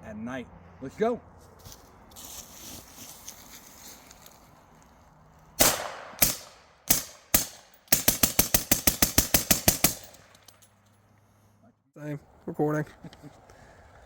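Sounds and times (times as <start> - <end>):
suppressed rifle shots: 5.6 - 10.4.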